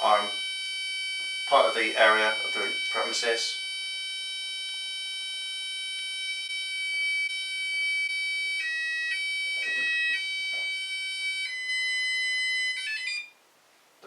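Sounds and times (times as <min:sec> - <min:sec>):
alarm keypad exit tone: 0:08.1 - 0:13.3.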